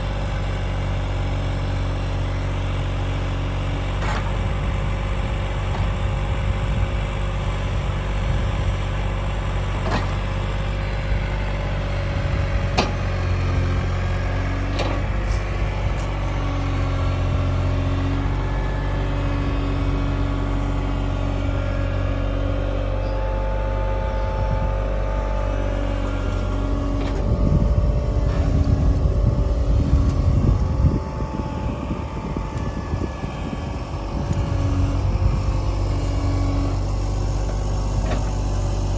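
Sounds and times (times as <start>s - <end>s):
excavator diesel engine running: 0.0s - 38.9s
whining tones: 14.9s - 38.9s.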